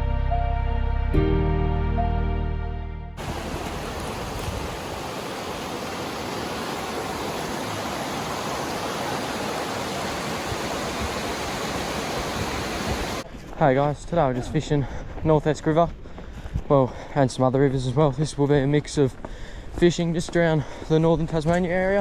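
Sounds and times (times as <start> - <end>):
background music: 0.0 - 3.2
river rushing over rapids: 3.2 - 13.2.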